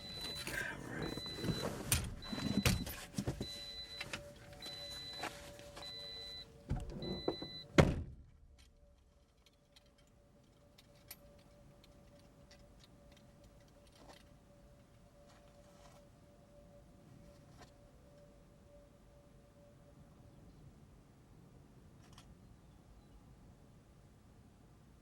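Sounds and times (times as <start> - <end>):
car door warning chime beeping: 0.0 - 7.9
car cabin hum: 0.0 - 8.4
car door thumping shut: 6.7 - 8.2.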